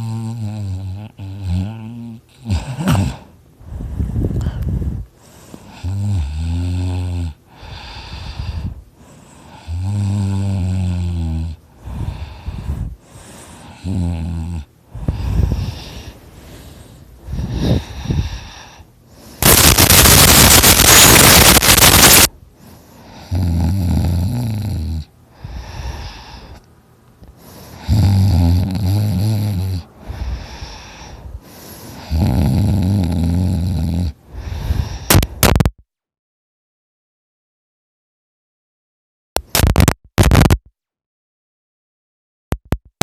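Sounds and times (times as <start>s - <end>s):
man snoring: 0.0s - 3.3s, 5.7s - 8.7s, 9.5s - 12.6s, 13.6s - 16.1s, 19.4s - 22.3s, 23.1s - 26.3s, 27.7s - 31.2s, 31.9s - 35.2s
loud hissing rush of breath: 15.0s - 22.3s, 34.3s - 35.2s
sharp clicks: 39.4s - 40.6s.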